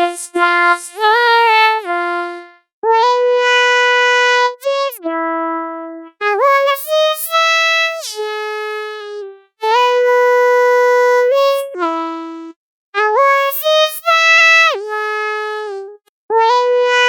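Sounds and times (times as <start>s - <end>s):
synthetic voice singing: 0.0s - 3.2s, 6.2s - 12.2s, 13.0s - 15.4s.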